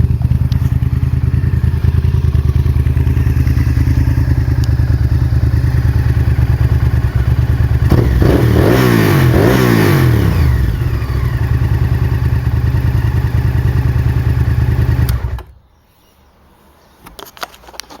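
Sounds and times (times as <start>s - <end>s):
motorcycle engine idling and revving: 0.0s - 15.7s
faint clicks: 4.5s - 4.8s.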